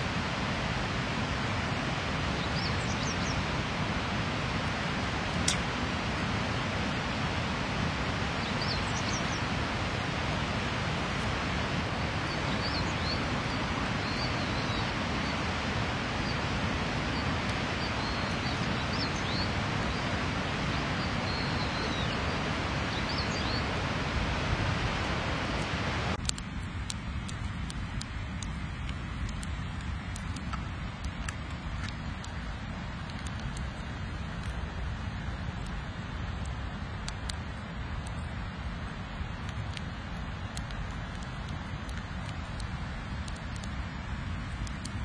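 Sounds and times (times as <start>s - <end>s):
steady rushing noise: 0.0s - 45.0s
small birds chirping: 2.3s - 3.6s, 8.2s - 9.7s, 11.8s - 24.4s
sharp crackling clicks: 5.3s - 5.7s, 26.2s - 32.4s, 39.4s - 43.8s, 44.5s - 45.0s.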